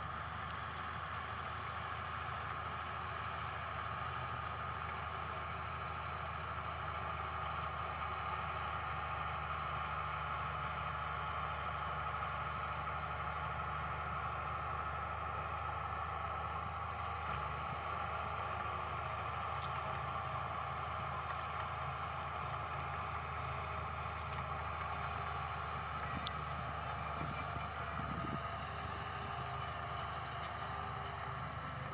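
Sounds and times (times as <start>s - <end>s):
diesel engine drone: 0.0s - 31.9s
high engine whine: 12.2s - 31.9s.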